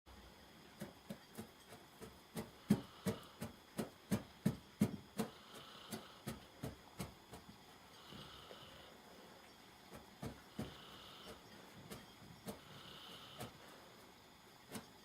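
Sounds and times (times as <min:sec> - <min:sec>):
dog snoring: 0:05.3 - 0:06.2, 0:08.0 - 0:08.9, 0:10.5 - 0:11.4, 0:12.5 - 0:13.7.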